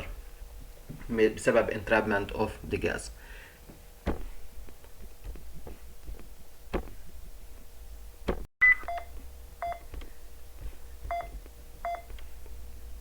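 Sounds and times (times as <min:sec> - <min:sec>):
two-tone alarm beeps: 0:08.6 - 0:09.9, 0:11.1 - 0:12.1.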